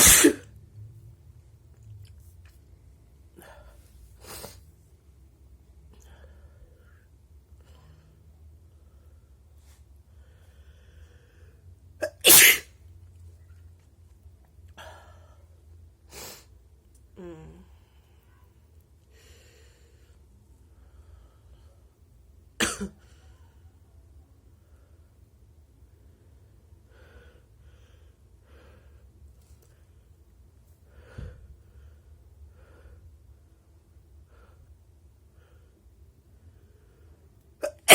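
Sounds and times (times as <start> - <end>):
person sneezing: 0.0 - 0.5, 12.0 - 12.7, 37.6 - 37.9.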